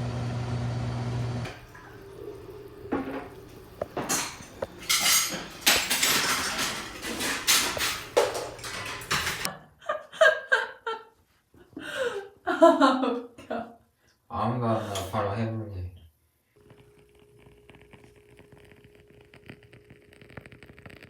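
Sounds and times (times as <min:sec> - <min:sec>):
dishes and cutlery clinking: 0:02.8 - 0:09.5.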